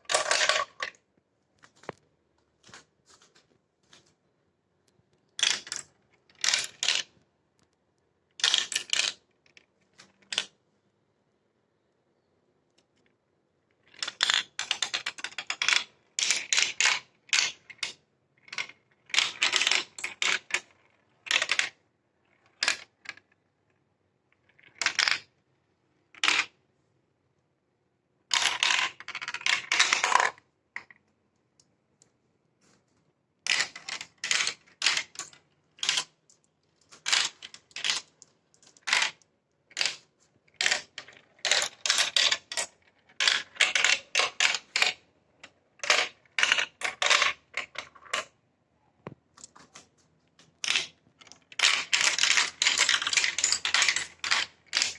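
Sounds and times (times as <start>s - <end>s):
glass marbles clattering down plastic track: 0.0s - 1.0s, 5.4s - 7.1s, 8.4s - 9.2s, 13.9s - 21.8s, 28.3s - 30.4s, 33.4s - 36.1s, 36.9s - 40.0s, 40.6s - 45.0s, 45.8s - 48.3s, 50.6s - 54.9s.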